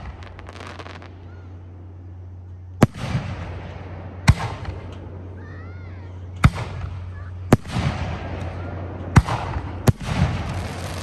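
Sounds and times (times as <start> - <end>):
sharp firework bangs: 0.0 - 1.5, 2.8 - 5.0, 6.4 - 11.0
fireworks crackling: 0.0 - 5.0, 6.4 - 11.0
steady low hum: 0.0 - 11.0.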